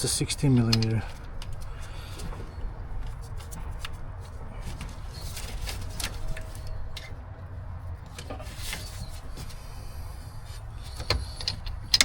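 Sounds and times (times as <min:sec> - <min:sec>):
steady low rumble: 0:00.0 - 0:12.0
hand tools clicking and knocking: 0:00.5 - 0:01.1, 0:11.0 - 0:12.0.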